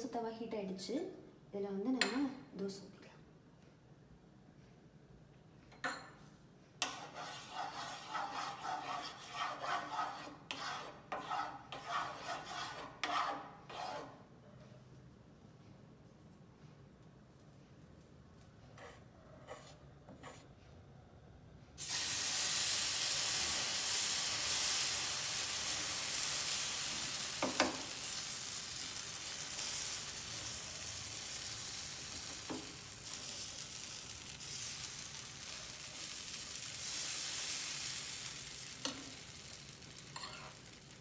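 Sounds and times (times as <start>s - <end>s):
batter sizzling on a griddle: 6.8s - 12.7s, 21.8s - 41.0s.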